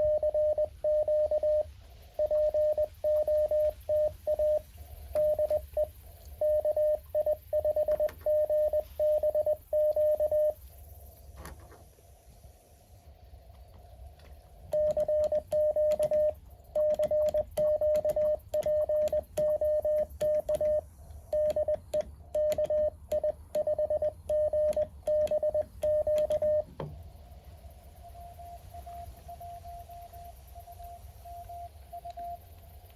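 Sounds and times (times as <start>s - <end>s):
morse code tone: 0.0s - 10.6s, 14.7s - 26.8s
faint higher morse signal: 0.0s - 11.2s, 12.8s - 32.9s.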